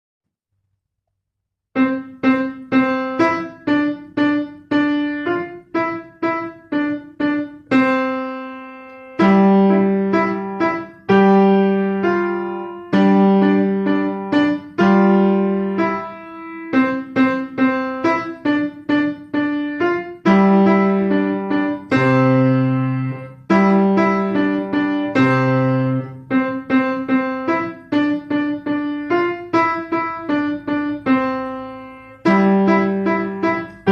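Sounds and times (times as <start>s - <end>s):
piano staccato notes: 1.8s - 33.9s.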